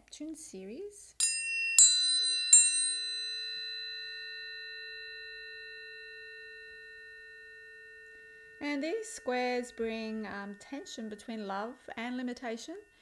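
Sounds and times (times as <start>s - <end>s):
tuning forks ringing: 1.2s - 13.0s.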